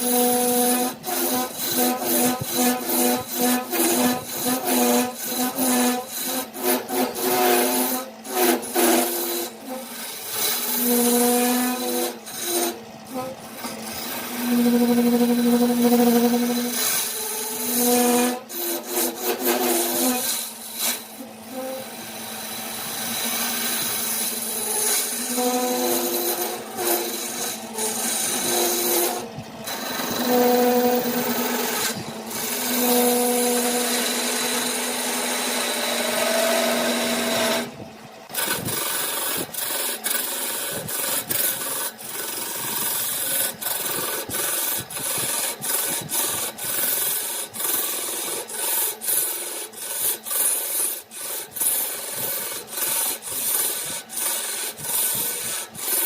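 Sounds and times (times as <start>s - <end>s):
lathe tool scraping wood: 0.0s - 56.0s
steady pitched hum: 0.1s - 40.2s.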